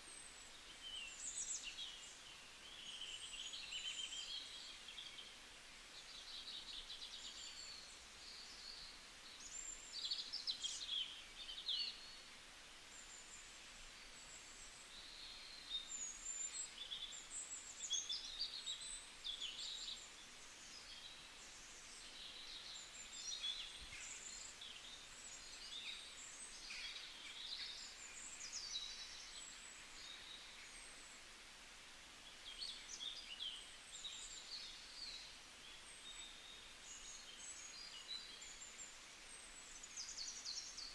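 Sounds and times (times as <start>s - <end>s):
faint steady hiss: 0.0s - 40.9s.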